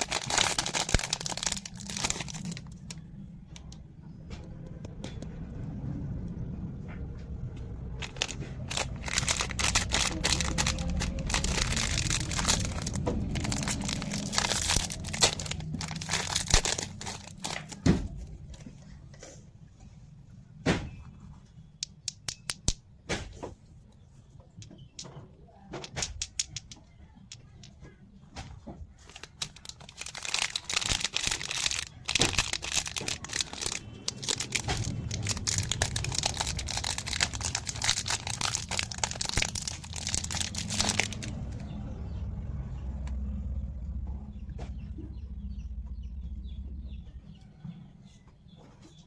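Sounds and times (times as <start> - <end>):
plastic packaging crinkling: 0.0 - 3.8, 8.0 - 18.5, 29.0 - 41.5
low handling rumble: 0.0 - 20.5, 23.8 - 47.8.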